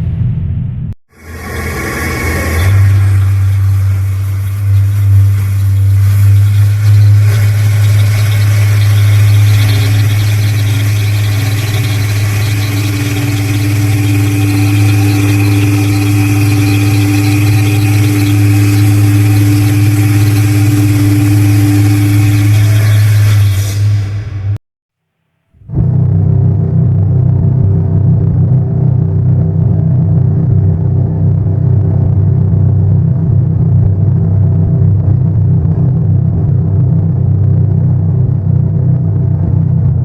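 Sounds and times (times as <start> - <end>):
deep ship whistle blast: 1.2 - 24.6
fainter higher tone: 1.2 - 24.6.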